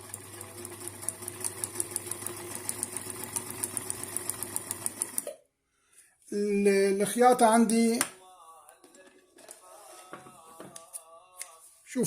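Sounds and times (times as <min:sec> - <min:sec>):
sewing machine stitching: 0:00.0 - 0:05.3.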